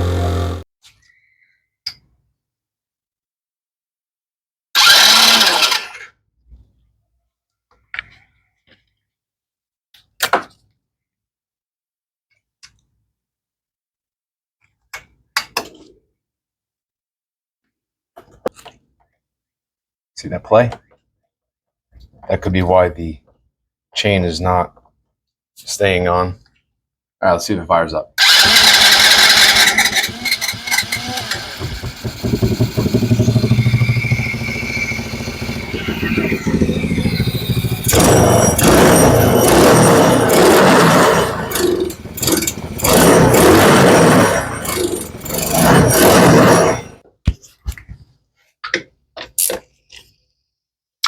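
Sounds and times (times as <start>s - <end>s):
electric starter cranking engine: 0.0s - 0.6s, 4.8s - 6.1s, 28.2s - 47.0s
small engine running: 0.0s - 0.6s, 4.8s - 6.0s, 28.2s - 47.0s
parts clunking and knocking: 29.7s - 34.1s, 36.7s - 45.7s.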